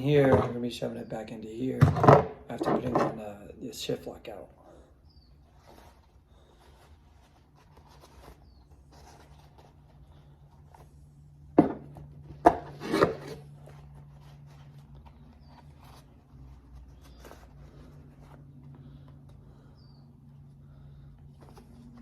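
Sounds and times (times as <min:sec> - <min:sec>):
hands rubbing and rustling plastic: 0:05.3 - 0:22.0.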